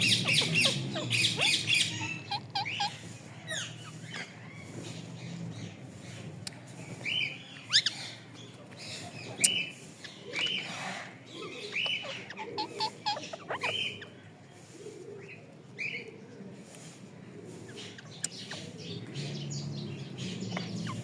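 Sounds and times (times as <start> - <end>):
parrot chirps and squawks: 0.0 - 4.7, 9.4 - 14.2, 20.7 - 21.0.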